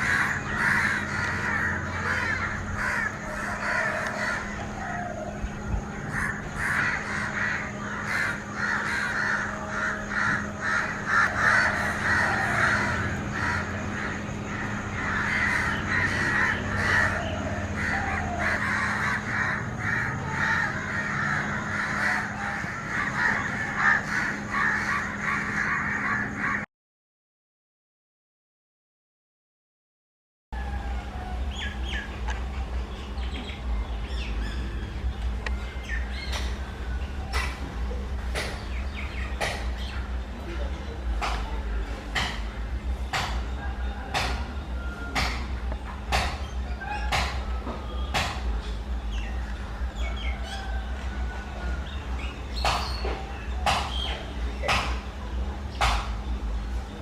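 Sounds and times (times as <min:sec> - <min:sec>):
bird harsh chattering calls: 0:00.0 - 0:26.6, 0:31.4 - 0:44.5, 0:51.9 - 0:56.7
steady low hum: 0:00.0 - 0:26.7, 0:30.6 - 0:57.0.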